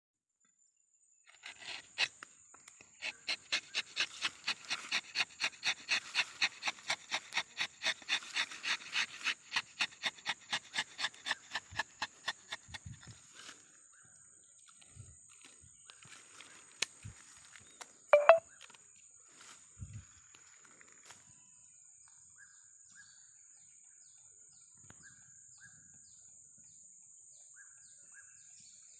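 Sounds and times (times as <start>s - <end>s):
knife rasping on bark: 1.3s - 13.6s
short chirps: 18.2s - 18.4s.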